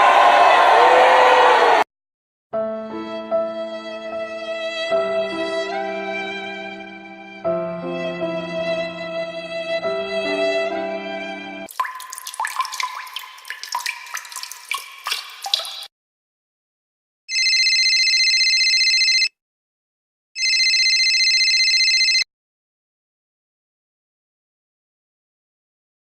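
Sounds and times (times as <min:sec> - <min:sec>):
water-drop plinks: 0:11.7 - 0:15.9.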